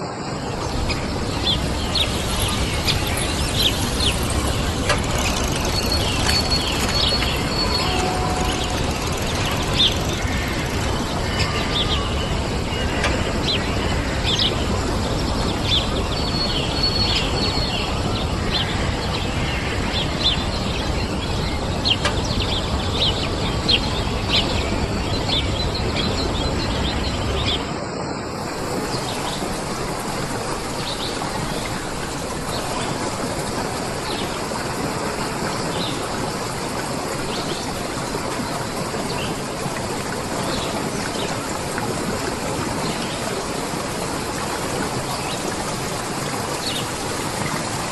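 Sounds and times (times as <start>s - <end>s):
rush of running water: 0.0s - 47.9s
small birds chirping: 0.6s - 18.0s.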